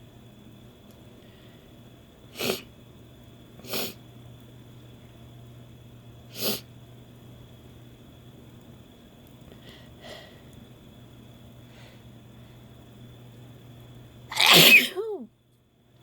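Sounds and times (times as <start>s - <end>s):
woman sneezing: 14.3s - 15.3s.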